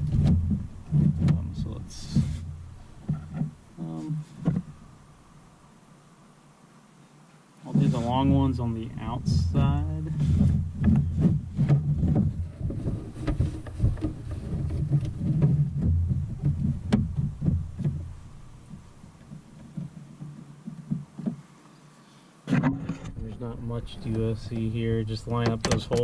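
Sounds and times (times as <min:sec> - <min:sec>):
low rubbing noise: 0:00.0 - 0:05.6, 0:07.6 - 0:21.6, 0:22.5 - 0:26.0
plastic knocks and clicks: 0:04.4 - 0:04.7, 0:09.6 - 0:21.4, 0:24.0 - 0:26.0.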